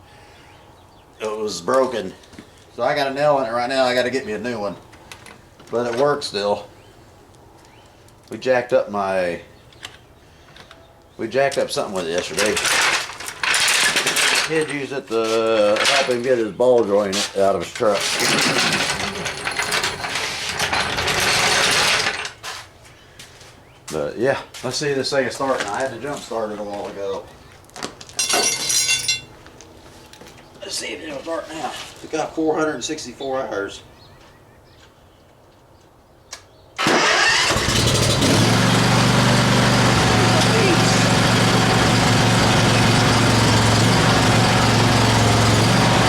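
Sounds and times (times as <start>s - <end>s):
lawn mower engine starting: 12.0s - 14.8s, 15.5s - 16.2s, 17.8s - 22.5s, 36.8s - 46.0s
floor jack clicking and rattling: 12.2s - 14.8s, 17.8s - 22.5s.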